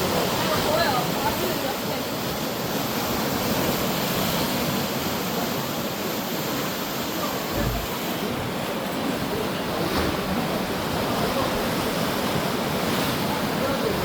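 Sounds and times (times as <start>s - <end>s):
sea waves breaking on shore: 0.0s - 14.0s
low thump: 7.5s - 7.9s.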